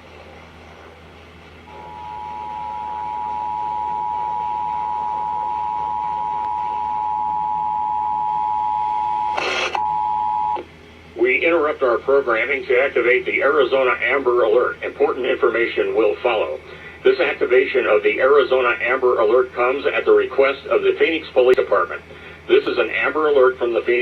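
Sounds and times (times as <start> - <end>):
two-tone alert signal: 1.7 - 10.6
noise burst: 1.7 - 24.0.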